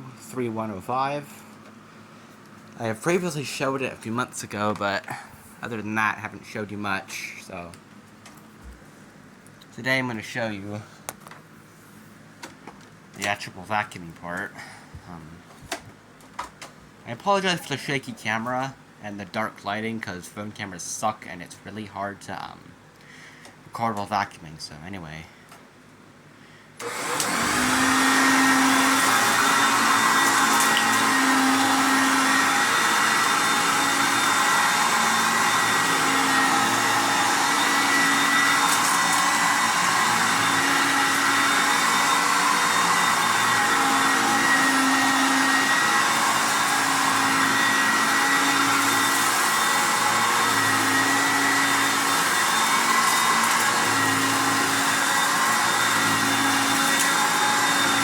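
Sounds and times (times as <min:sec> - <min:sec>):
vacuum cleaner motor whine: 0:26.8 - 0:58.0.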